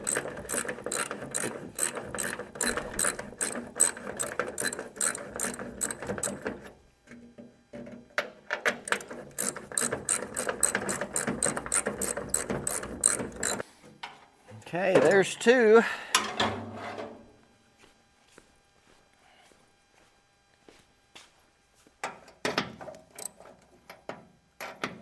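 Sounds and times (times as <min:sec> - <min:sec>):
ratchet wrench clicking: 0:00.0 - 0:06.4, 0:08.9 - 0:13.6.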